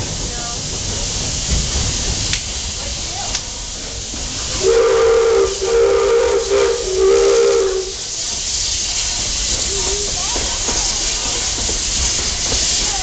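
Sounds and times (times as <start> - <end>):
train hiss and rumble: 0.0 - 13.0
steam locomotive whistle: 4.5 - 8.1.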